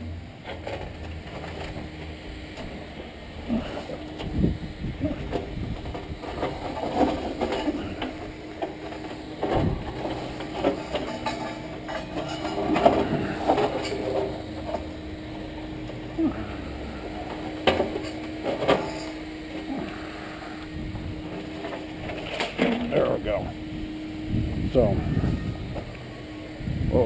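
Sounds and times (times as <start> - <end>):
steady mechanical hum: 0.0 - 27.0
metal parts knocking and scraping: 0.4 - 2.8, 5.2 - 16.1, 16.9 - 19.7.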